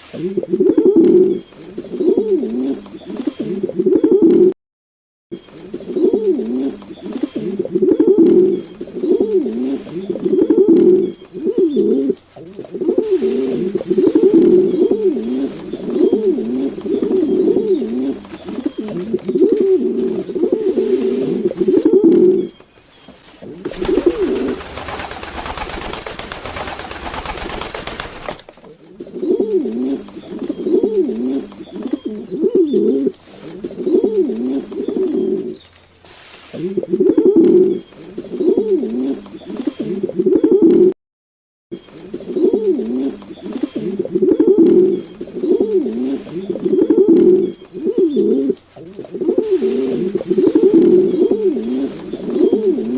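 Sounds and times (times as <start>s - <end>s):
pigeons cooing: 0.0s - 4.5s, 5.4s - 22.6s, 23.4s - 35.6s, 36.5s - 40.9s, 41.8s - 52.9s
steady rushing noise: 23.7s - 28.4s.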